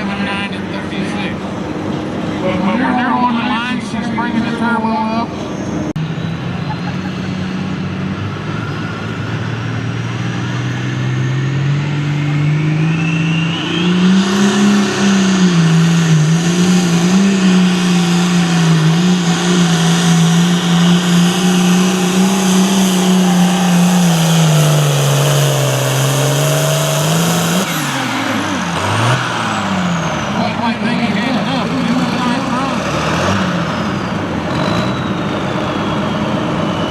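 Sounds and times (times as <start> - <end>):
diesel tractor engine at full throttle: 0.0 - 36.9
turbo whistle: 12.8 - 14.2.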